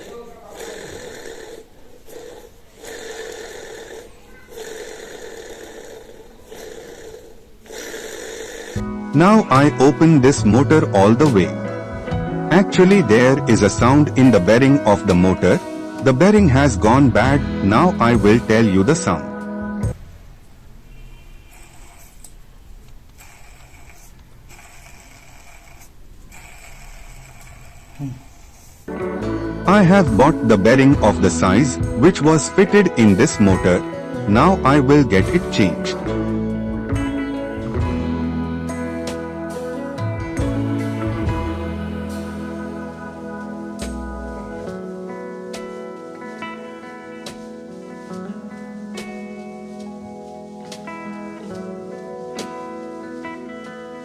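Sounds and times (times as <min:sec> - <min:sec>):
fan motor rough bearing noise: 0:00.0 - 0:10.8, 0:21.3 - 0:28.9
rough fan motor bearing noise: 0:21.2 - 0:36.3.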